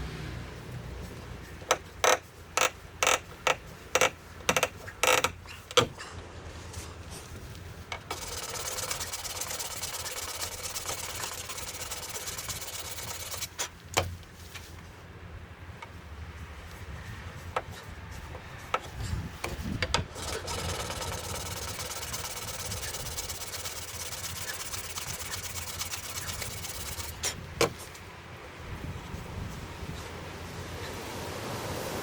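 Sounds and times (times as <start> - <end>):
sharp clicks and knocks: 1.6 - 6.2, 7.9 - 14.9, 17.5 - 28.0
mechanical rasping: 7.9 - 14.2, 18.5 - 27.4.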